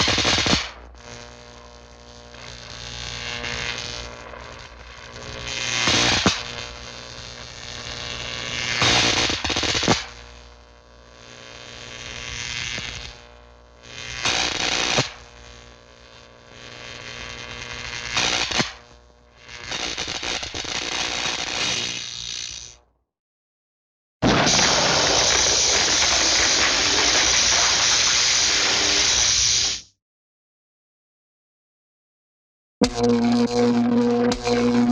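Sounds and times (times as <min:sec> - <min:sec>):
electric sparks crackling: 0:00.0 - 0:10.5, 0:11.4 - 0:18.9, 0:19.5 - 0:22.7, 0:24.2 - 0:29.8.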